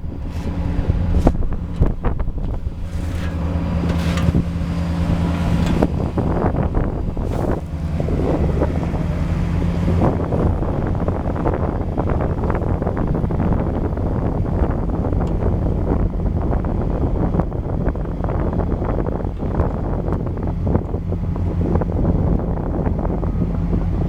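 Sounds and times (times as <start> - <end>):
diesel engine running steadily: 0.0 - 24.0
wind buffeting microphone: 0.0 - 24.0
machine clanks and knocks: 0.4 - 7.9.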